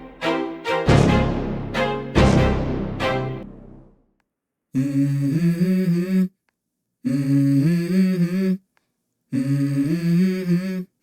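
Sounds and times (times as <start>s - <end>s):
person humming a melody: 9.4s - 10.9s.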